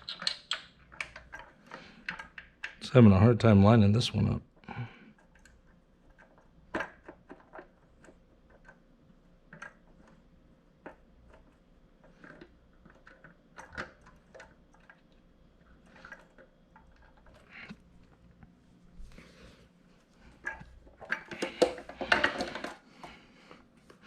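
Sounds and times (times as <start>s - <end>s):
screw and metal parts clicking: 0.0s - 2.8s.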